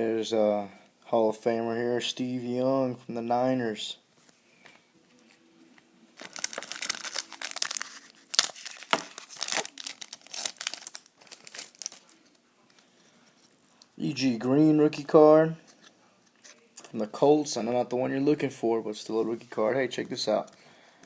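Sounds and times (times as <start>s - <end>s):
plastic wrapper crinkling: 6.2s - 13.9s.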